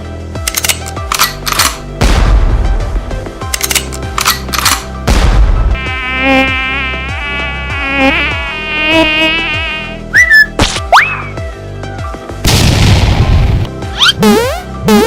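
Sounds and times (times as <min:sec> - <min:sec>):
cartoon fly buzzing: 0:05.8 - 0:10.3, 0:14.0 - 0:15.0
whistling glides: 0:10.1 - 0:11.3.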